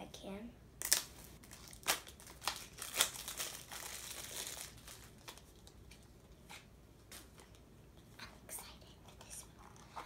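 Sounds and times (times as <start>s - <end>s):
packaging tearing: 0.8s - 5.8s
plastic packaging crinkling: 0.8s - 6.1s.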